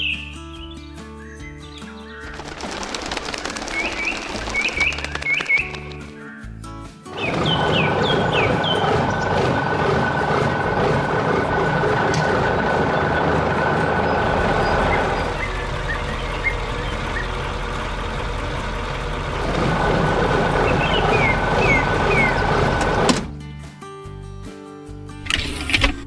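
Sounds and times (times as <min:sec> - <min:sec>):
heavy construction machine running: 0:07.1 - 0:23.5
deep hum: 0:07.2 - 0:23.6.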